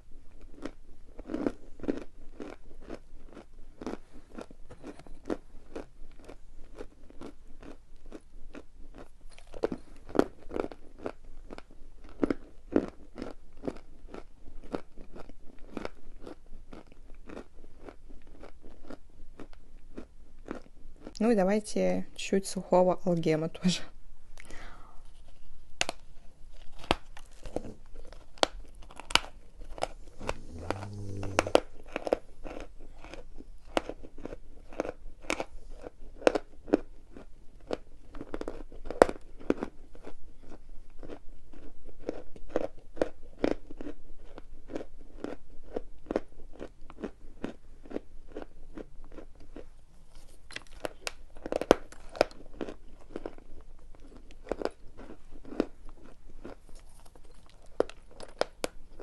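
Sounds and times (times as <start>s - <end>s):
chewing: 0.2s - 21.2s, 24.4s - 59.0s
chalk crunching when bitten: 25.2s - 48.5s.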